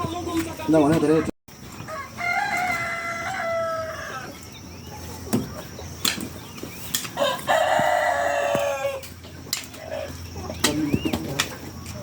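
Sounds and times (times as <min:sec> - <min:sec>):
rooster crowing: 0:01.8 - 0:04.4, 0:07.2 - 0:09.1.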